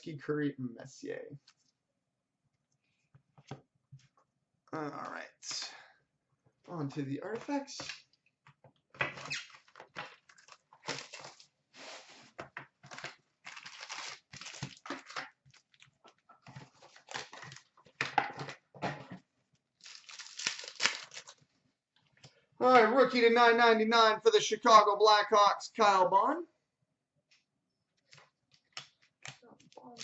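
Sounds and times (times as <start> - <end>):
packaging being torn and crinkled: 10.2 - 11.5, 12.9 - 15.9, 16.8 - 17.8, 19.8 - 21.4, 28.6 - 30.0.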